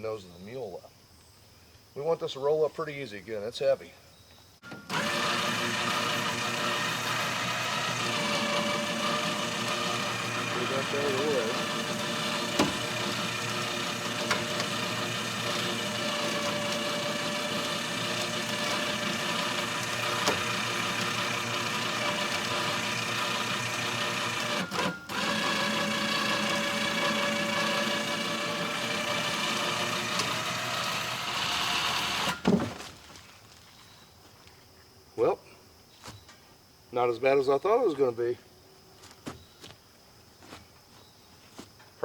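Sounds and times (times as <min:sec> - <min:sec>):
winch whining: 0:04.6 - 0:32.8.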